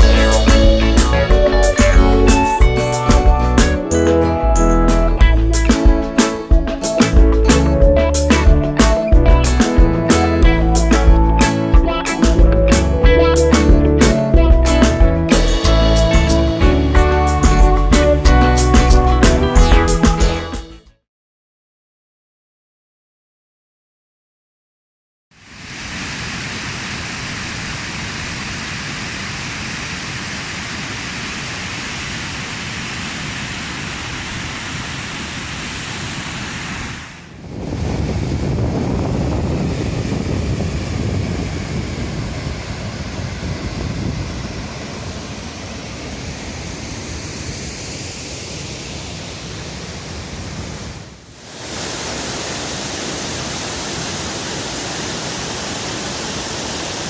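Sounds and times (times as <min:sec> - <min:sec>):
waterfall rushing water: 0:25.4 - 0:37.4, 0:42.4 - 0:57.0.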